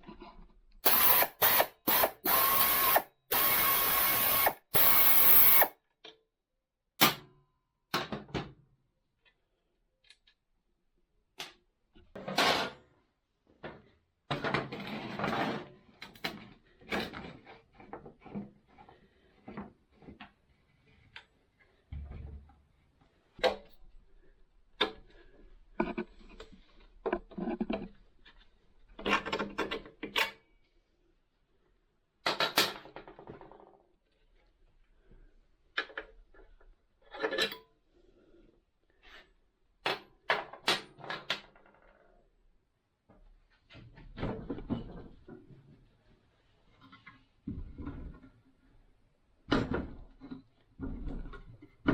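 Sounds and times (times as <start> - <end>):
hand tools and metal clinking: 0.8 - 5.7.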